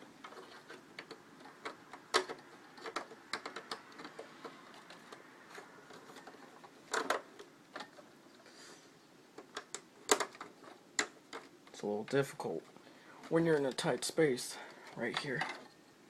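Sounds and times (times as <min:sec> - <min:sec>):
plastic and metal clicks: 0:00.2 - 0:08.0.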